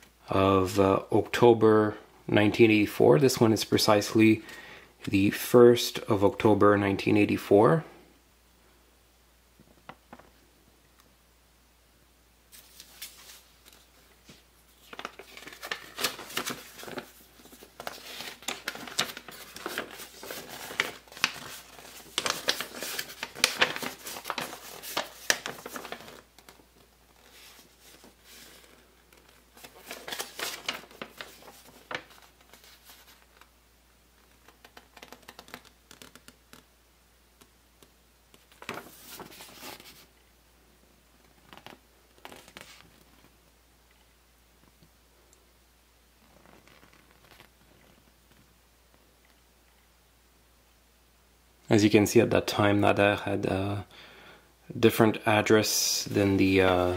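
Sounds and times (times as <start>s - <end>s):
paper crinkling and rustling: 12.5s - 33.5s, 34.2s - 36.6s, 37.4s - 40.1s, 41.2s - 43.4s, 46.2s - 48.5s.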